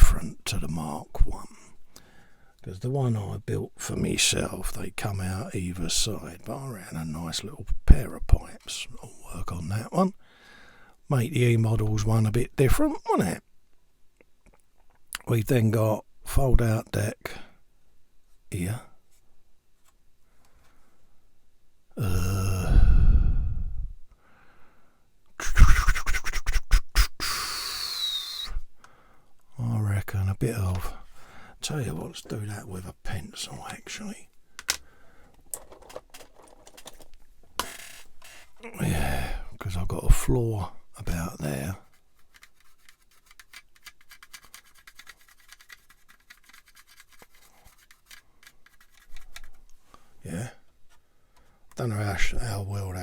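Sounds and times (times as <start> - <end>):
low drawn-out voice: 22.0 - 23.4, 38.6 - 40.6
pencil scratching on plastic: 25.4 - 27.1, 41.4 - 49.6
handheld drill whirring: 37.6 - 38.5.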